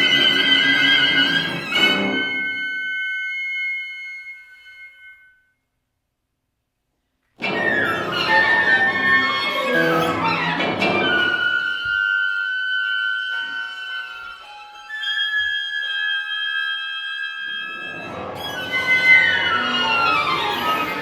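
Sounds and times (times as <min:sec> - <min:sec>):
chamber ensemble playing: 0:08.0 - 0:10.5, 0:13.2 - 0:21.0.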